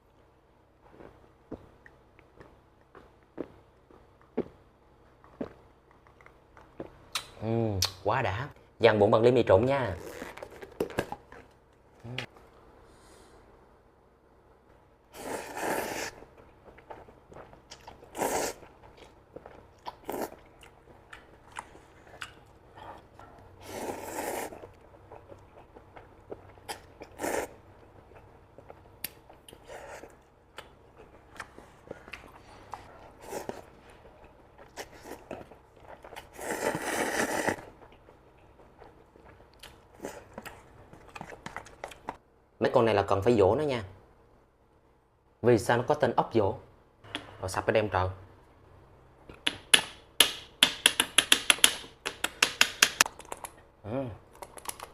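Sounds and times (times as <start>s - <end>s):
chewing and biting: 37.6s - 42.2s.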